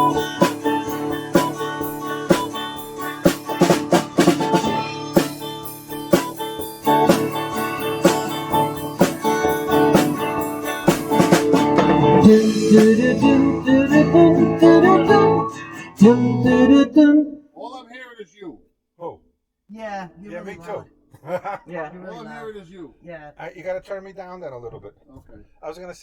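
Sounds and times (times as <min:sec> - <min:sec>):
drum kit beat: 0:00.0 - 0:15.5
guitar: 0:00.0 - 0:17.4, 0:19.8 - 0:22.6.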